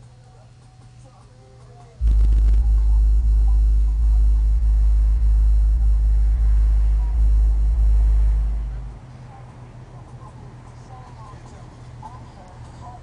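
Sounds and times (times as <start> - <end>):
loud deep bass music: 2.0 - 9.1
faint high steady tones: 2.0 - 9.4.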